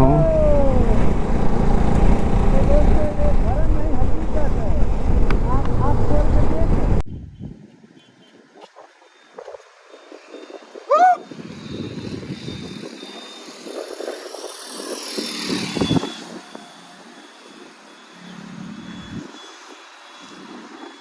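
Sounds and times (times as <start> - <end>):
motorcycle engine: 0.0 - 7.0
wind rushing: 0.0 - 7.6.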